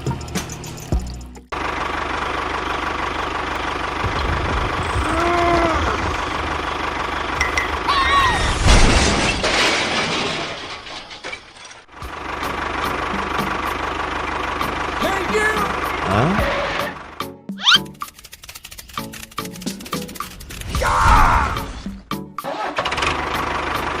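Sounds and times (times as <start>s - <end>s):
loud noisy burst: 3.6s - 7.1s.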